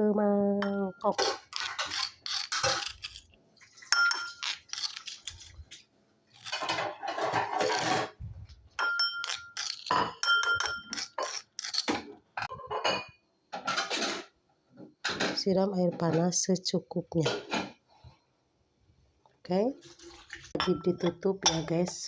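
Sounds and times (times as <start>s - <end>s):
spoon scraping and clinking on bowl: 0.6s - 5.7s, 6.3s - 8.1s, 8.8s - 14.0s, 20.6s - 22.0s.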